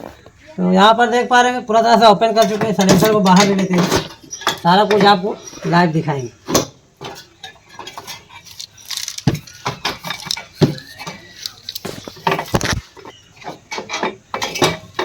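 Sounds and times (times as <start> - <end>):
metal clanks and knocks: 2.3 - 8.6, 9.2 - 15.0.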